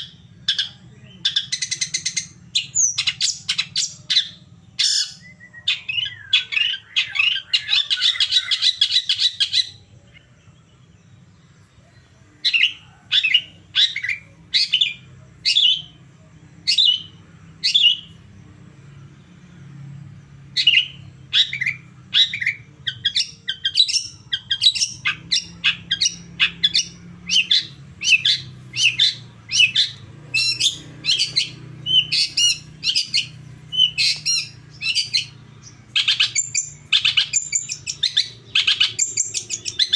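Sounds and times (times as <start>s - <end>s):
bird calling harshly: 0.0s - 9.8s, 20.6s - 39.9s.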